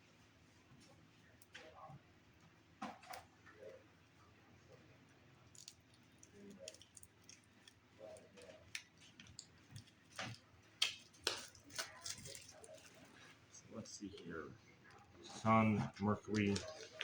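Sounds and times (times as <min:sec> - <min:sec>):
plastic wrapping crinkling: 0:09.3 - 0:13.2.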